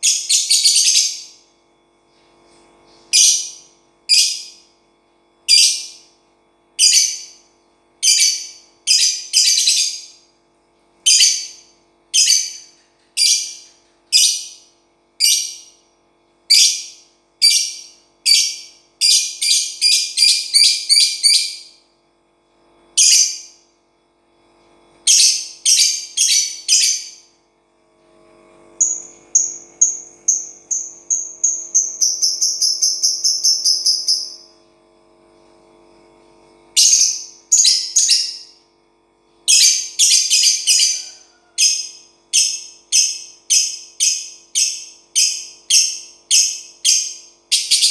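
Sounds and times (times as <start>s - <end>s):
bird trill: 0.0s - 1.4s, 3.2s - 4.6s, 5.5s - 6.0s, 6.8s - 7.4s, 8.0s - 10.2s, 11.1s - 15.8s, 16.5s - 21.8s, 23.0s - 23.6s, 25.1s - 27.3s, 28.8s - 34.5s, 36.8s - 38.6s, 39.5s - 47.9s
lovebird chirping: 0.0s - 1.4s, 3.2s - 4.6s, 5.5s - 6.0s, 6.8s - 7.3s, 8.0s - 10.1s, 11.1s - 11.6s, 12.2s - 14.6s, 15.2s - 15.7s, 16.5s - 21.7s, 25.1s - 27.2s, 28.8s - 34.5s, 36.8s - 38.5s, 39.5s - 47.9s.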